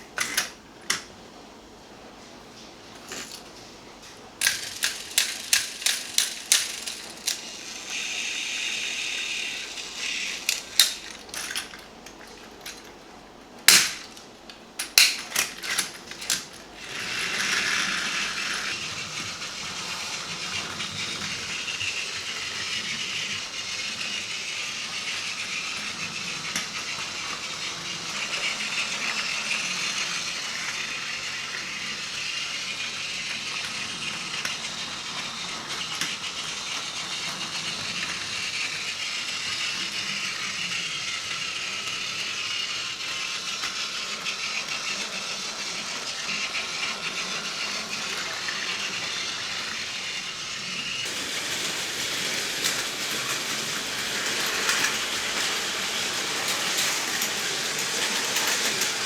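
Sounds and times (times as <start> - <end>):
toy train motor whirring: 0.0 - 1.1, 3.0 - 3.5, 4.4 - 12.9, 13.7 - 14.2, 14.8 - 59.0
plastic toy parts clicking: 4.4 - 8.1, 9.5 - 12.9, 13.7 - 14.2, 14.8 - 18.0.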